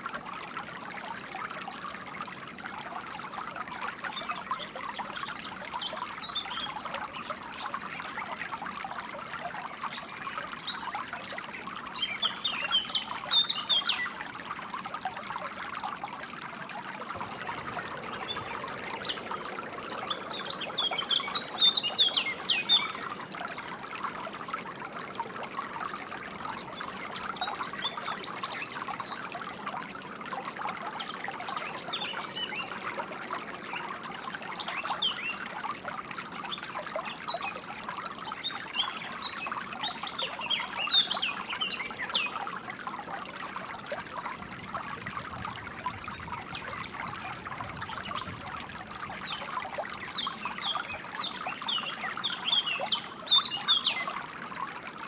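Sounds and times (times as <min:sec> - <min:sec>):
stream trickling and splashing: 0:00.0 - 0:55.0
songbirds chirping: 0:16.8 - 0:29.6, 0:30.8 - 0:35.5, 0:49.2 - 0:54.2.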